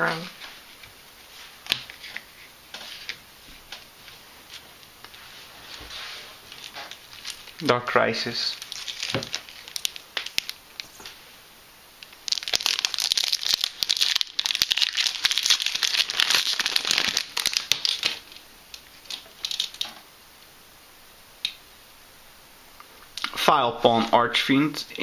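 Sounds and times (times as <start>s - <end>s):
foil wrapper crinkling: 6.5s - 7.7s, 8.4s - 11.2s, 12.0s - 20.0s.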